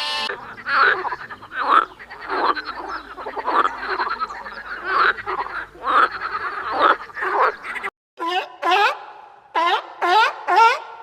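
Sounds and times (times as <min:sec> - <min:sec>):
frog chorus: 0:00.0 - 0:07.9
loud pulsed frog croaks: 0:00.0 - 0:08.3.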